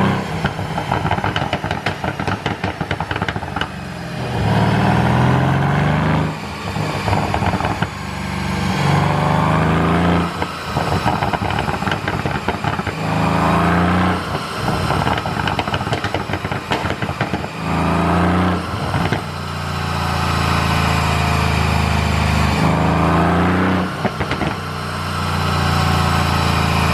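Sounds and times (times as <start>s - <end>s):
car engine revving: 0.0s - 26.9s
exhaust crackles and pops: 0.3s - 3.8s, 6.8s - 8.0s, 10.1s - 19.4s, 23.8s - 24.8s.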